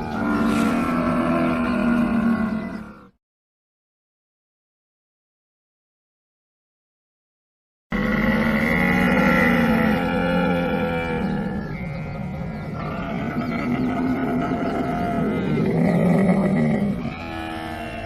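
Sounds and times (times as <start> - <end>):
camel groaning: 0.0 - 3.1, 8.0 - 18.0.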